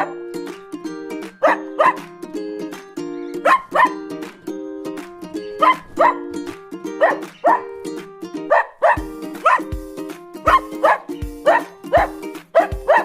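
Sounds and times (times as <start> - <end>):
music track: 0.0 - 13.0
dog barking: 1.4 - 2.0, 3.4 - 4.0, 5.6 - 6.3, 7.0 - 7.7, 8.5 - 9.7, 10.5 - 13.0
kick drum beat: 9.0 - 13.0.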